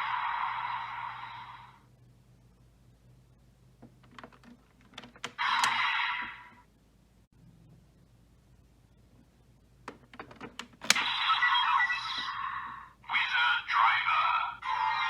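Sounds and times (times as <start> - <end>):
sharp plastic clicks: 3.8 - 5.8, 9.9 - 11.2.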